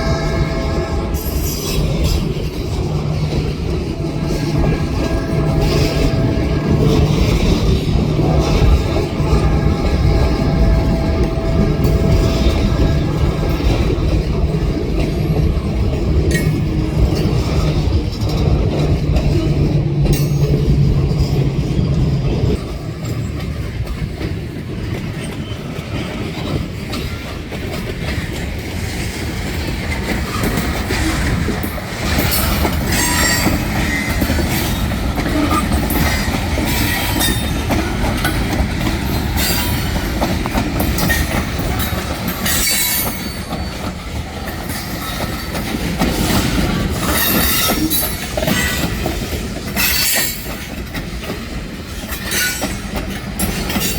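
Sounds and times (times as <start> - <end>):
train low drone: 0.0 - 53.9
train wheels clickety-clack: 0.0 - 53.9
steel wheels squealing: 30.2 - 40.2, 40.8 - 49.1, 49.7 - 50.8, 52.0 - 53.9.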